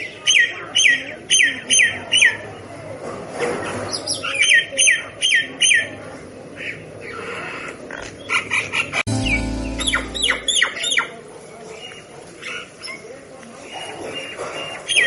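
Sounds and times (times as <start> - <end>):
low hum: 9.1 - 10.8.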